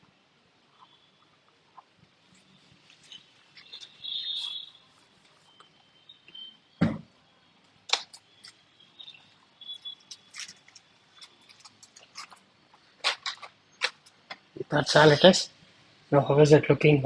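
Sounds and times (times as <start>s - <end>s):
cloth squeaking on surface: 2.4s - 5.6s.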